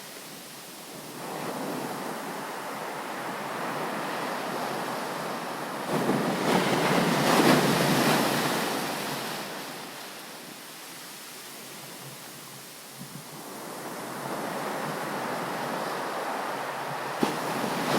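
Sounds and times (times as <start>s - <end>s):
surf hiss: 0.0s - 17.9s
ocean waves crashing: 1.1s - 10.3s, 13.5s - 17.9s.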